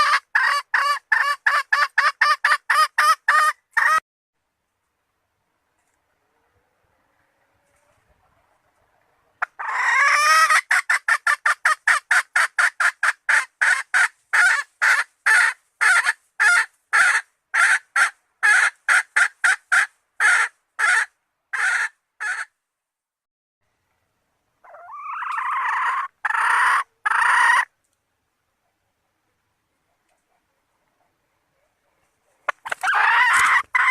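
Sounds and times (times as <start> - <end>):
hen calling: 7.2 - 22.5, 24.6 - 27.7, 32.2 - 33.9.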